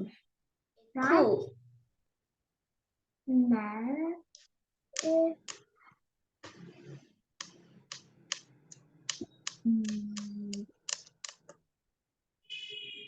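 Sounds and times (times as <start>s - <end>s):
computer keyboard typing: 7.4s - 11.6s.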